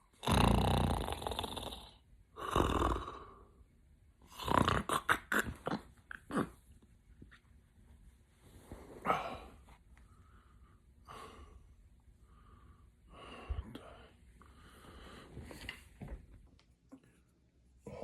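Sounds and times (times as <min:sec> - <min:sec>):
rattling snore: 0:00.2 - 0:03.3, 0:04.3 - 0:05.2.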